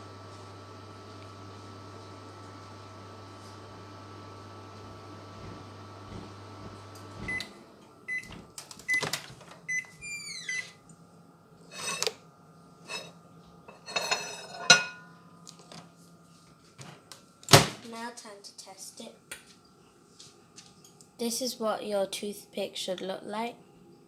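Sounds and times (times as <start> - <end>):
microwave oven humming: 0.0 - 24.0
microwave beeps: 4.8 - 10.8.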